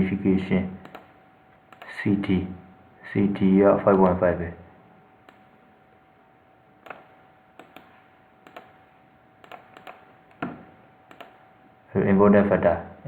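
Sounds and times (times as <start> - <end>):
faint steady hum: 0.0 - 13.0
keyboard and mouse clicks: 0.8 - 1.1, 1.7 - 1.9, 5.2 - 5.5, 6.8 - 8.8, 9.4 - 11.4.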